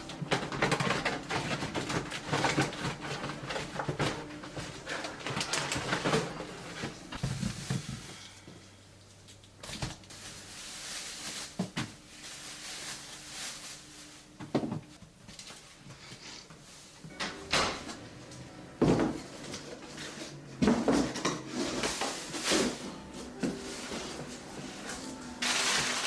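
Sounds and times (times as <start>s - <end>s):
rustling and clatter: 0.0s - 8.3s.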